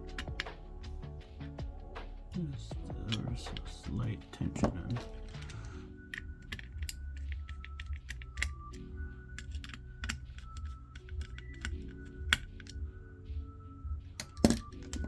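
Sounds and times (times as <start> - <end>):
faint background music: 0.0 - 15.0
screwdriver clicking on screws: 9.4 - 12.8.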